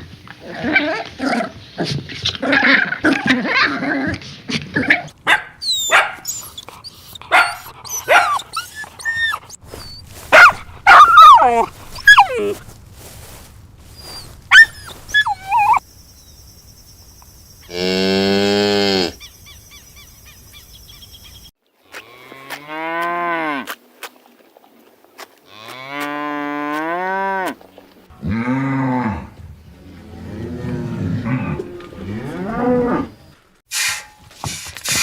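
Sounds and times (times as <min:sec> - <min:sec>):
dog whining: 0:05.6 - 0:12.6, 0:14.0 - 0:15.8
cows mooing: 0:17.7 - 0:19.2, 0:25.5 - 0:27.6, 0:28.2 - 0:33.2.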